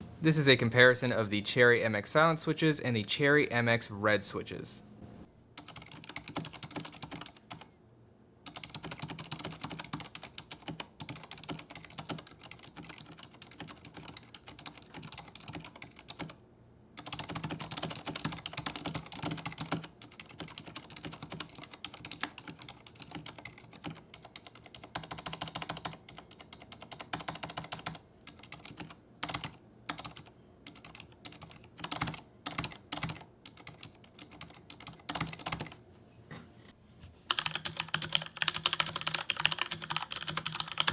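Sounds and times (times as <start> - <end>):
mechanical keyboard typing: 5.6 - 7.7, 8.5 - 16.4, 17.0 - 35.8, 37.3 - 40.9.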